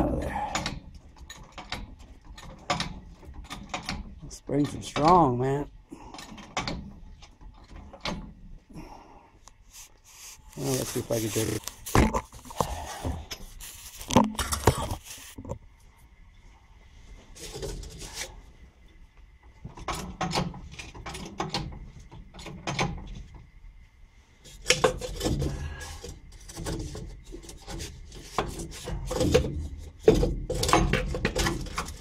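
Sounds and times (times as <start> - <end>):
jack scraping and creaking: 0.0 - 8.2, 9.7 - 15.6.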